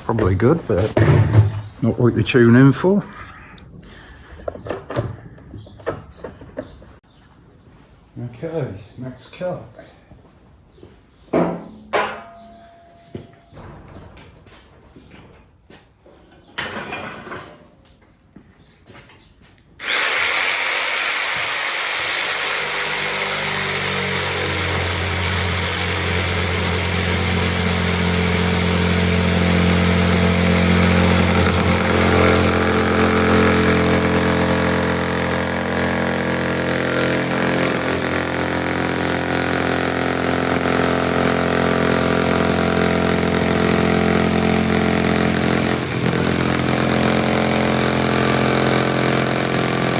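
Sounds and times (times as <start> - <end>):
power saw cutting: 16.2 - 17.7, 19.8 - 49.9.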